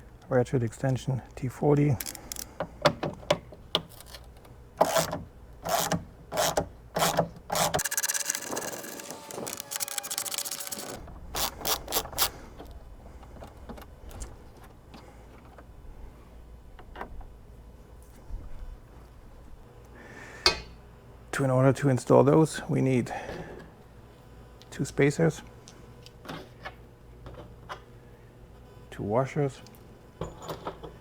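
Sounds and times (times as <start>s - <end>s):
hand ratchet clicking: 4.8s - 12.3s.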